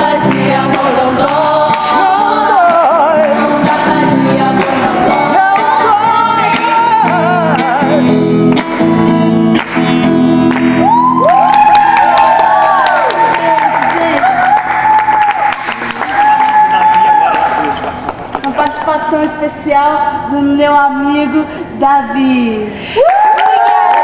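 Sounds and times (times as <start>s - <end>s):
woman singing with vibrato: 0.0s - 8.3s, 18.5s - 22.8s
guitar accompaniment: 0.0s - 19.5s.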